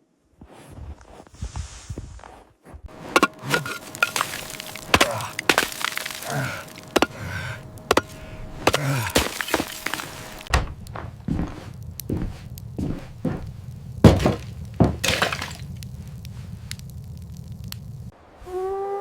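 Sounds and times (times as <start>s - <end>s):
sharp cracks and knocks: 3.1s - 13.4s, 14.0s - 16.9s.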